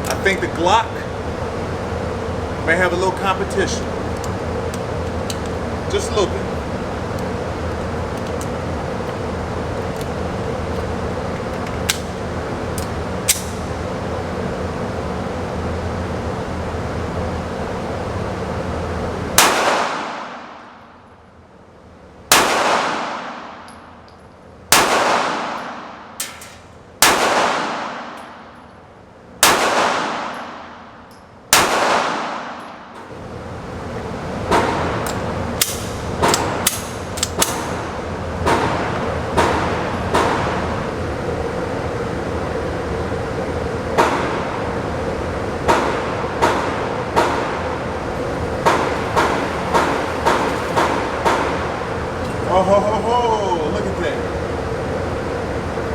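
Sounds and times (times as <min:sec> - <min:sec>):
steady hum: 0:00.0 - 0:55.9
pistol shots with echo: 0:19.4 - 0:20.6, 0:22.3 - 0:23.6, 0:24.7 - 0:26.4, 0:27.0 - 0:28.2, 0:29.4 - 0:30.8, 0:31.5 - 0:32.6.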